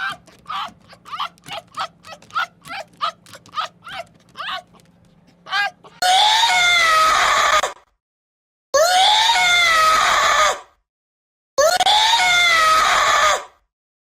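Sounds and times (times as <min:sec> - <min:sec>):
animal giving short pitched calls: 0:00.0 - 0:06.2
animal screaming: 0:00.0 - 0:07.8, 0:08.8 - 0:10.7, 0:11.8 - 0:13.5.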